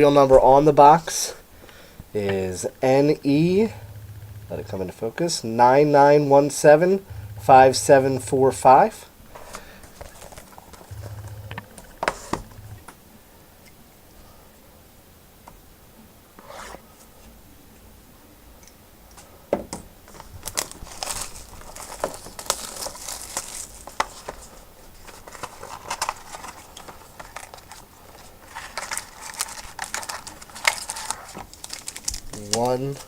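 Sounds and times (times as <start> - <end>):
plastic wrap crinkling and tearing: 20.2 - 33.0.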